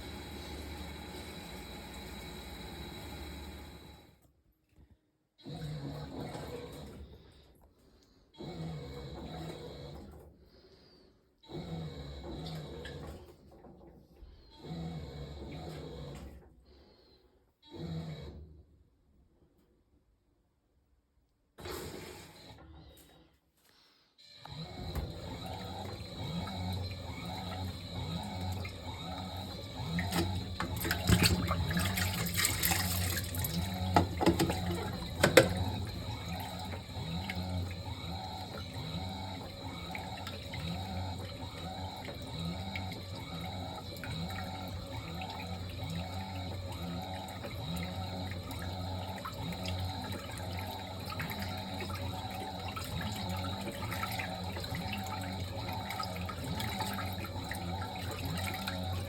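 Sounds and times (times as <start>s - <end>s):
washing machine water sloshing: 5.6s - 7.4s, 24.6s - 59.0s
splashing and knocks: 30.0s - 35.8s.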